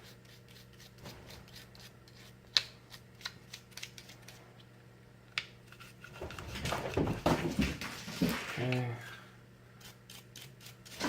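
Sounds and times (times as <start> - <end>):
rustling and scraping: 0.0 - 2.6.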